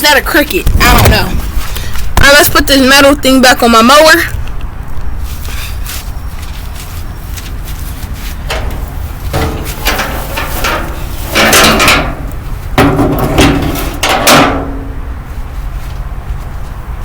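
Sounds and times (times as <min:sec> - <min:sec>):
metallic clanks and scraping: 0:08.0 - 0:15.0.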